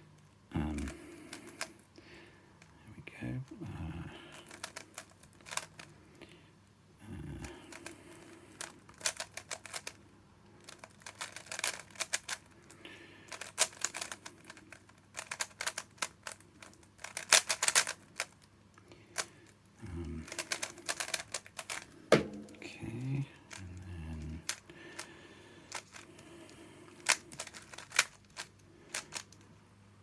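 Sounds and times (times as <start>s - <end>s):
puzzle cube plastic layers clicking: 0.8s - 1.8s, 4.4s - 5.9s, 7.7s - 10.0s, 10.6s - 12.5s, 13.3s - 18.5s, 19.1s - 22.7s, 25.7s - 26.1s, 27.0s - 29.5s.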